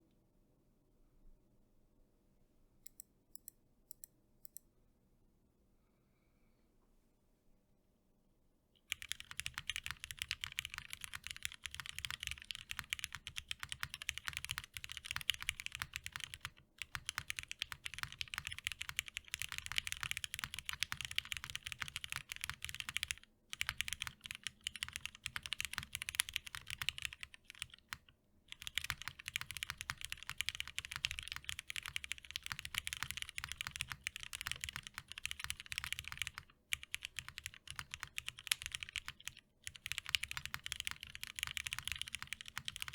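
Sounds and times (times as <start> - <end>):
mechanical keyboard typing: 8.9 - 42.9.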